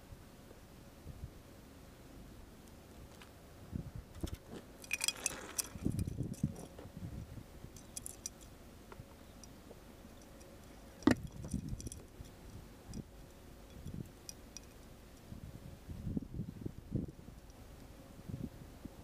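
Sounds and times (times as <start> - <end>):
objects clinking and rustling: 4.2 - 6.8.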